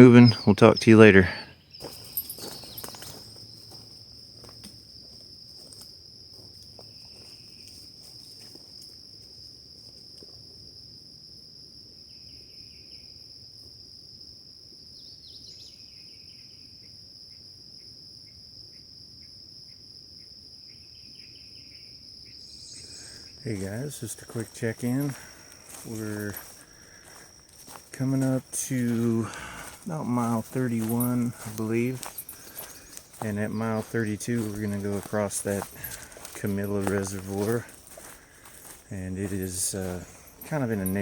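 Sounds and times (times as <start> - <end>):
insects trilling: 0.0 - 41.0.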